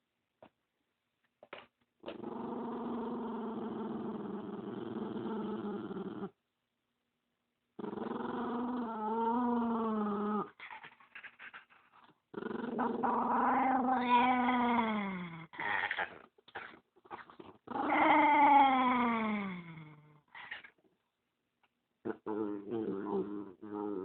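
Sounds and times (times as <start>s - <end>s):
dog growling: 2.0s - 6.4s, 7.8s - 11.6s, 12.3s - 20.7s, 22.0s - 24.0s.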